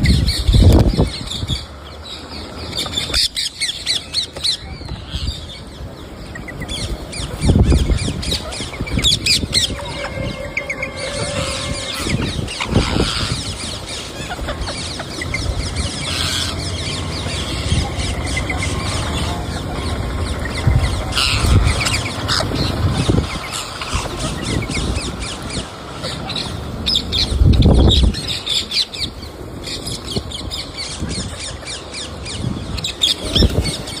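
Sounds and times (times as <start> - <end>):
parrot squawks and chirps: 6.3 - 19.2.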